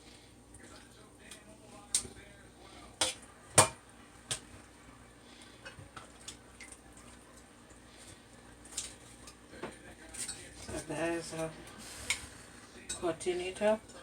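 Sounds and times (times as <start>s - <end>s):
water drips and small splashes: 5.9s - 9.4s.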